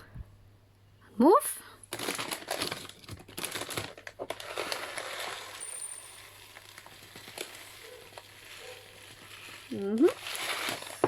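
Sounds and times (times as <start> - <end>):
rice grains rustling in a sock: 4.4 - 11.0.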